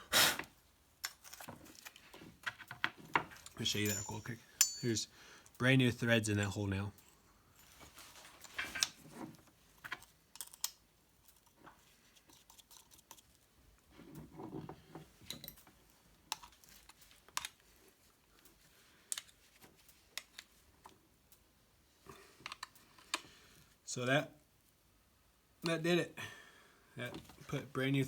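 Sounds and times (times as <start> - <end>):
metal parts clicking: 3.3 - 5.0, 9.8 - 11.5.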